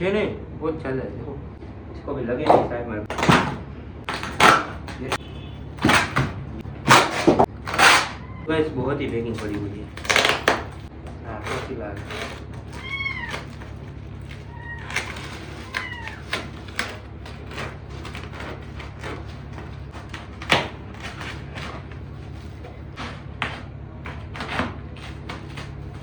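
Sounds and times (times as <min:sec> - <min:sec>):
steady low hum: 0:00.0 - 0:26.0
cardboard packaging tearing: 0:03.1 - 0:05.2, 0:05.8 - 0:08.2, 0:09.2 - 0:26.0
cat meowing: 0:08.0 - 0:08.5, 0:12.6 - 0:16.9.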